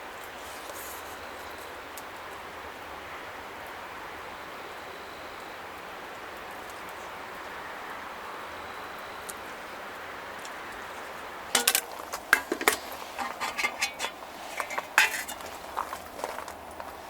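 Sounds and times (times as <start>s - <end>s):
steady hiss: 0.0s - 17.0s
cutlery and dishes clinking: 11.6s - 15.6s.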